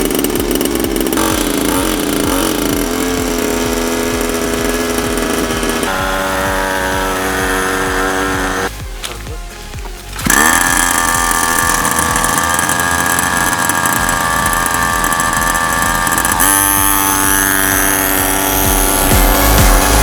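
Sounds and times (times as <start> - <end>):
minibike engine revving: 0.0 - 20.0.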